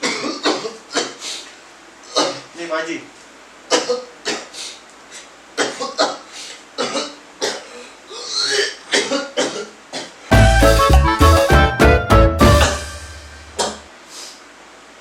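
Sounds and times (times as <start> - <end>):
man coughing: 0.0 - 1.2, 2.1 - 2.5, 3.7 - 4.6, 5.6 - 10.2, 13.6 - 13.9
throat clearing: 0.0 - 1.4, 2.1 - 2.5, 3.7 - 10.2, 13.6 - 13.9.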